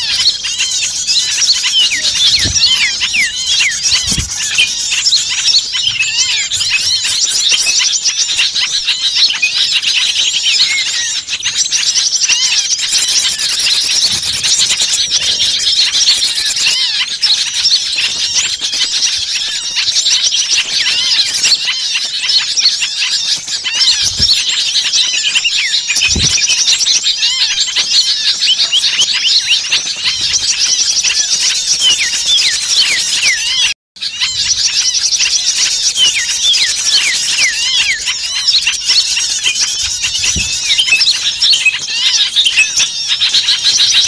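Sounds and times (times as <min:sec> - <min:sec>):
chorus of songbirds chirping: 0:00.0 - 0:44.0.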